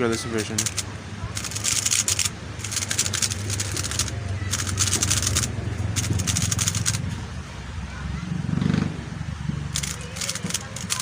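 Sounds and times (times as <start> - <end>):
plastic puzzle cube clicking: 0.6 - 7.0, 9.8 - 11.0.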